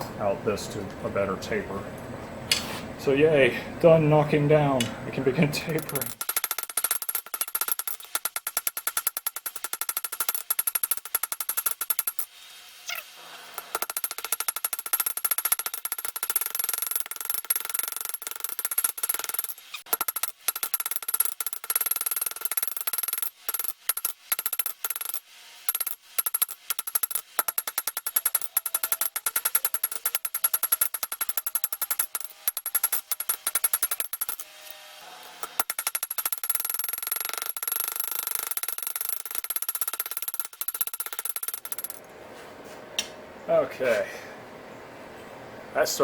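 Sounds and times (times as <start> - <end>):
anvil ringing: 5.3 - 6.2.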